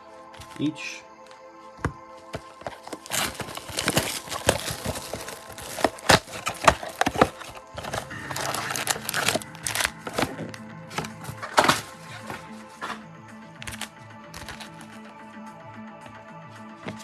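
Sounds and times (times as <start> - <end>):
faint background music: 0.0 - 17.0
plastic wrapper crinkling: 2.6 - 12.4, 13.6 - 15.1.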